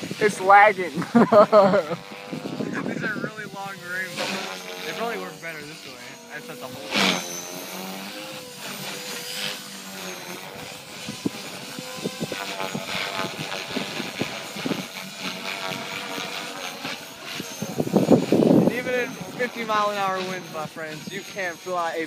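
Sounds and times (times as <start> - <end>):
wind buffeting microphone: 0.0 - 4.3, 10.6 - 21.6
rc helicopter rotor whine: 0.0 - 22.0.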